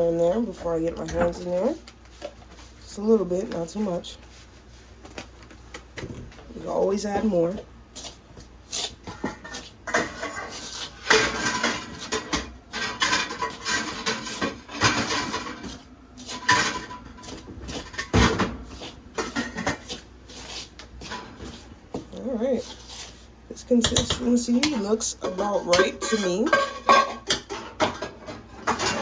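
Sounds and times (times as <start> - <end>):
fork scraping a mixing bowl: 8.0 - 11.1, 18.7 - 21.6, 22.6 - 27.0.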